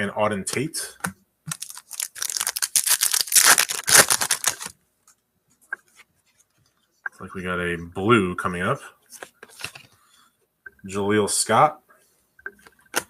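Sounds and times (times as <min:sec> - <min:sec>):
trading cards clicking and rustling: 0:01.5 - 0:04.7.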